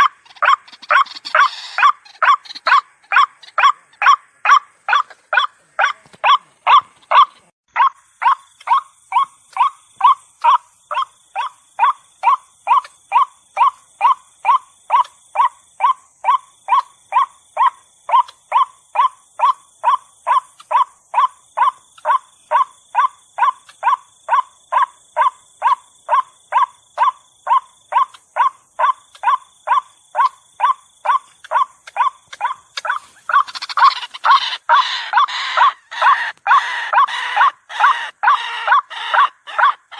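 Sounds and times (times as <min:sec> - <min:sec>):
harsh noisy bird call: 0:00.0 - 0:04.6, 0:31.1 - 0:39.9
waterhen repeated call: 0:00.0 - 0:39.9.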